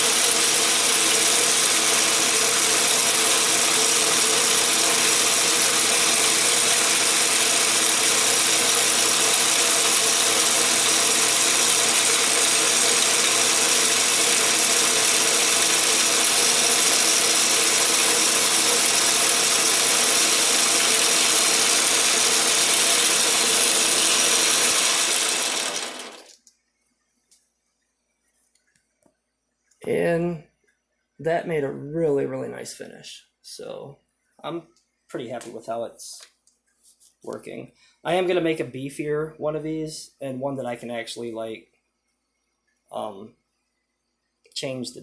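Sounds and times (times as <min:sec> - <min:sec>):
lathe gears clattering: 0:00.0 - 0:26.4
lathe whine: 0:00.0 - 0:26.4.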